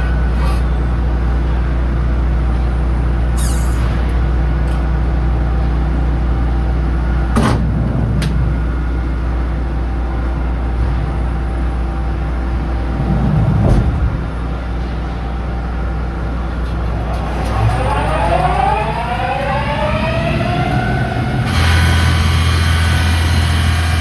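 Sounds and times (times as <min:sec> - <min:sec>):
low mechanical hum: 0:00.0 - 0:24.0
heavy knock: 0:12.8 - 0:14.4.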